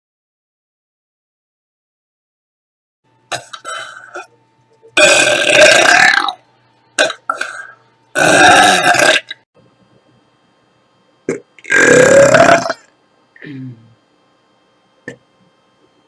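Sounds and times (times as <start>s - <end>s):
woman belching loudly: 5.0s - 6.4s, 7.0s - 7.6s, 8.2s - 9.4s, 11.3s - 12.9s.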